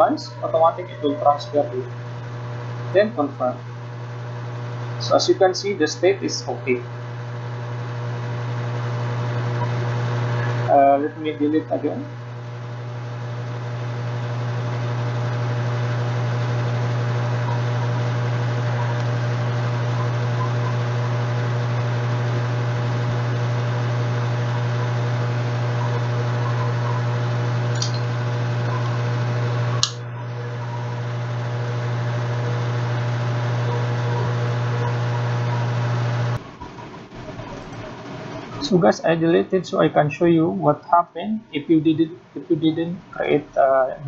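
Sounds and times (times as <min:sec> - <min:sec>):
low electrical hum with hiss: 0:00.0 - 0:12.9
click: 0:27.7 - 0:28.0, 0:29.8 - 0:30.0.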